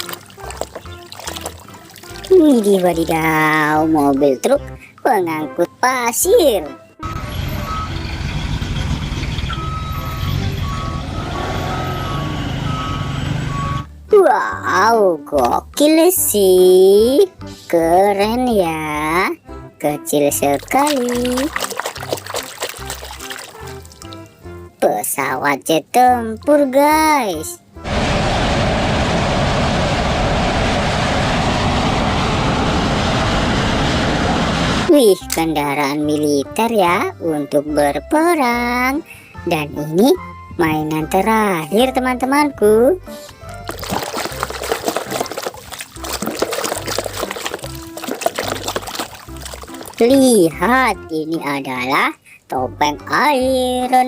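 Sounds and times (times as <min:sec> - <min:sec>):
two-tone reversing alarm beeping: 0:07.0 - 0:14.0
truck engine rumbling: 0:07.0 - 0:14.1, 0:27.8 - 0:34.9.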